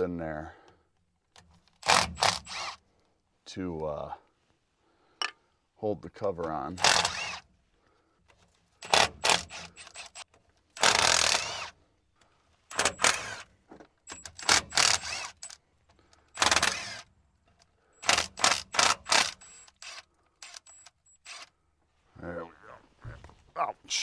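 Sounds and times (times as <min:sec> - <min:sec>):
power tool bursts: 0:01.8 - 0:02.8, 0:06.8 - 0:07.4, 0:08.8 - 0:10.2, 0:10.8 - 0:11.8, 0:12.7 - 0:13.5, 0:14.1 - 0:15.6, 0:16.3 - 0:17.1, 0:18.0 - 0:21.5.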